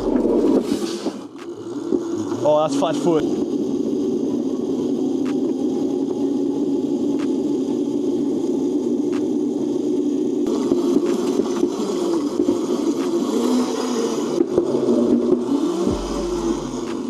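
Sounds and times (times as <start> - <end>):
electric motor whirring: 0.0 - 0.9, 10.5 - 17.0
wheels rolling and scraping: 0.0 - 8.5, 10.0 - 17.0.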